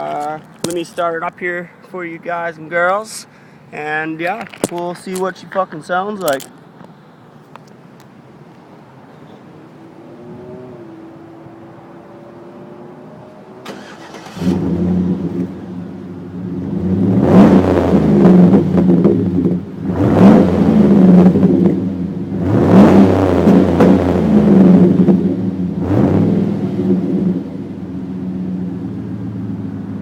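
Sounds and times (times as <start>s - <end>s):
engine revving: 9.6s - 27.9s
truck engine starting and idling: 13.6s - 30.0s.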